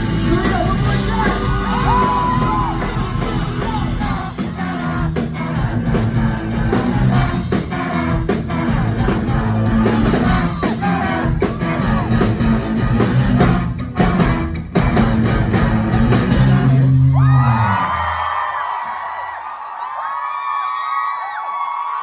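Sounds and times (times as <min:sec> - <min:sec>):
person singing: 0:00.0 - 0:12.4
steady drum beat: 0:00.0 - 0:17.4
live pop-rock band playing: 0:00.0 - 0:17.7.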